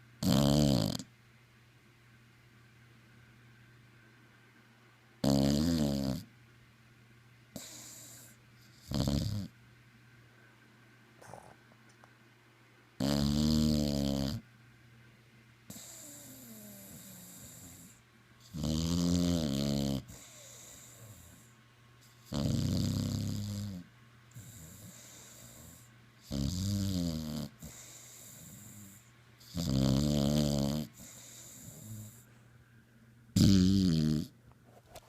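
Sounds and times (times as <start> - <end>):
person snoring: 0.2 - 1.0, 5.2 - 6.2, 24.4 - 32.2, 33.4 - 34.3
quiet breathing: 15.7 - 18.1, 20.0 - 22.2, 24.3 - 26.0, 27.5 - 29.5, 30.8 - 32.7.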